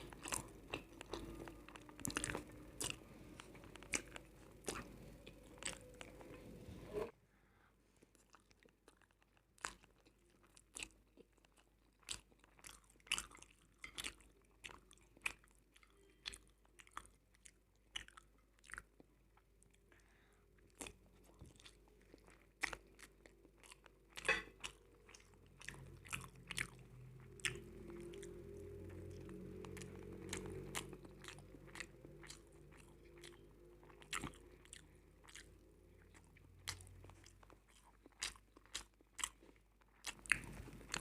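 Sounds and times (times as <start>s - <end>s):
crunching and chewing chips: 0.0s - 6.5s, 8.0s - 41.0s.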